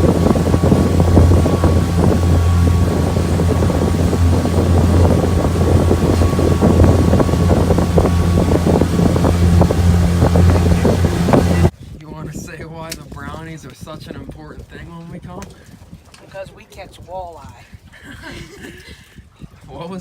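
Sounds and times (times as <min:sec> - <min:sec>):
outboard motor running: 0:00.0 - 0:11.7
wind buffeting microphone: 0:00.0 - 0:20.0.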